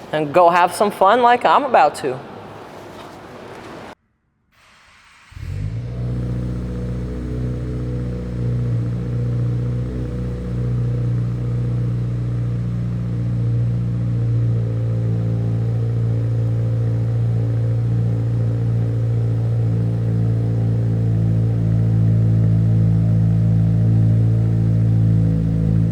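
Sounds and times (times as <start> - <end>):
car engine low rumble: 5.2 - 25.9.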